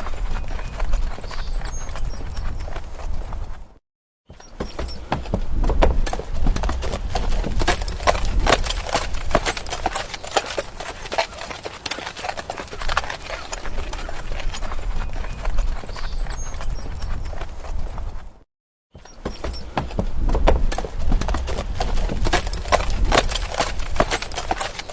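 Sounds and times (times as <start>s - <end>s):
horse hooves clip-clopping: 0.0s - 18.4s, 19.0s - 24.9s.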